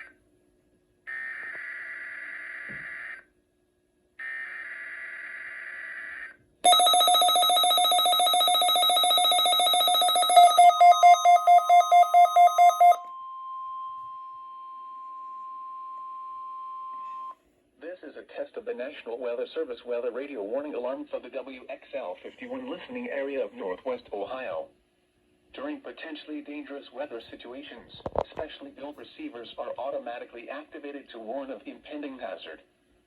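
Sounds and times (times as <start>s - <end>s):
steady warning tone: 6.7s - 13.0s
weather radio alert alarm beeping: 6.7s - 13.0s.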